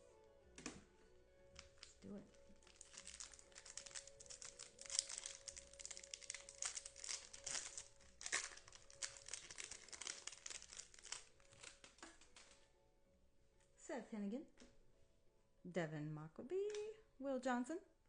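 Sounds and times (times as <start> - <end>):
wrapper tearing and crinkling: 1.6 - 12.6.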